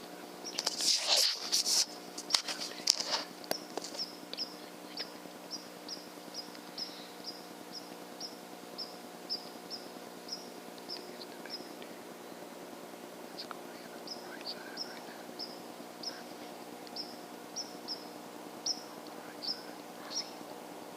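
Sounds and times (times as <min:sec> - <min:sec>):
steady low hum: 0:00.0 - 0:20.9
small bird chirping: 0:00.4 - 0:00.8, 0:03.5 - 0:12.5, 0:13.4 - 0:20.6
rustling: 0:00.5 - 0:04.1.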